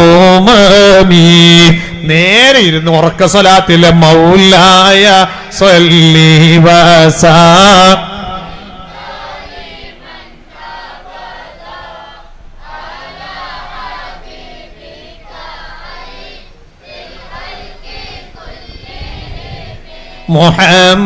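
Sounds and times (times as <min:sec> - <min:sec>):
congregation chanting in unison: 0:04.4 - 0:21.0.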